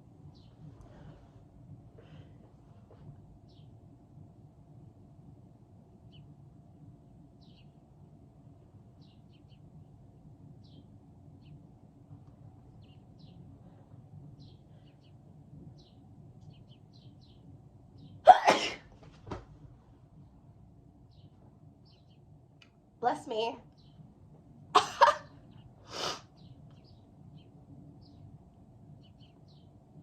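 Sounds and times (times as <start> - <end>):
low background hum: 0.0 - 30.0
person sneezing: 18.3 - 18.9.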